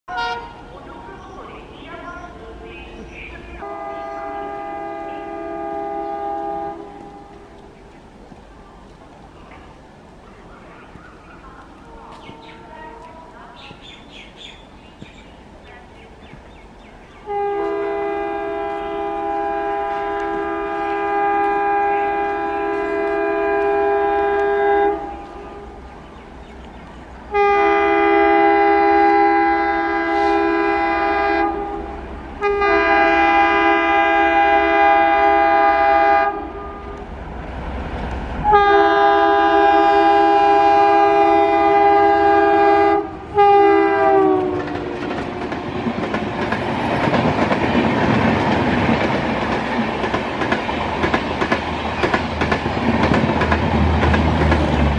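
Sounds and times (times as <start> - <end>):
locomotive air horn blasts: 0.1 - 0.7, 3.6 - 7.5, 17.2 - 25.8, 27.3 - 37.0, 38.4 - 45.6
train rumbling past: 0.1 - 54.9.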